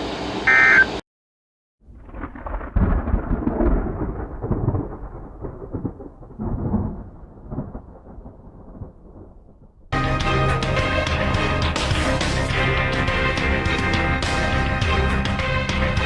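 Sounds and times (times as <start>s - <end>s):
thunder rumbling: 1.8s - 10.0s.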